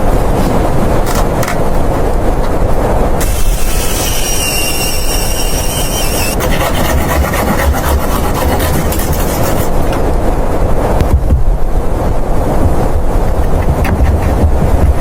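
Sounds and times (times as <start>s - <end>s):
strong blizzard wind: 0.0s - 15.0s
thin whistling tone: 3.8s - 6.4s.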